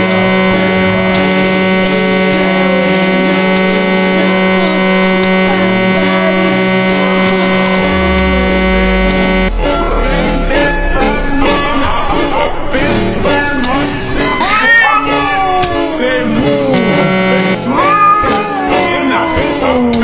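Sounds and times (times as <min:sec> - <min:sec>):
electronic buzzing tone: 0:00.0 - 0:15.0
deep hum: 0:00.0 - 0:17.7.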